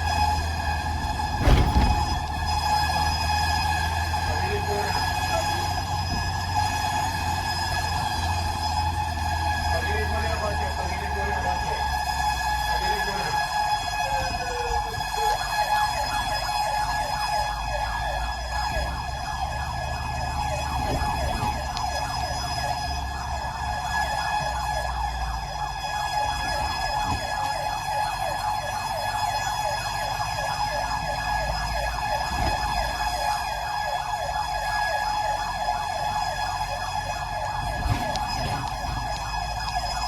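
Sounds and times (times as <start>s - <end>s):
emergency siren yelping: 0.0s - 40.0s
low vehicle engine rumble: 0.0s - 40.0s.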